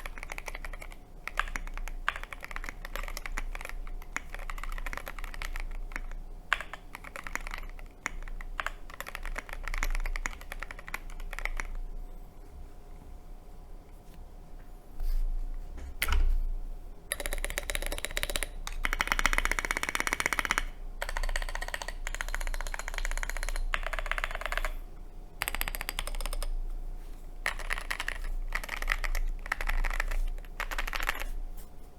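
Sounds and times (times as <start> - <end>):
fast mechanical keyboard typing: 0.0 - 11.9, 17.1 - 24.8, 25.4 - 26.6, 27.4 - 31.4.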